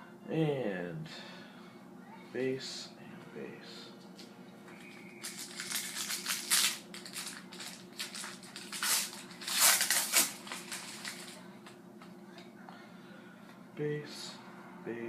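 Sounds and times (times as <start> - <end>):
foil wrapper crinkling and tearing: 4.8 - 11.4.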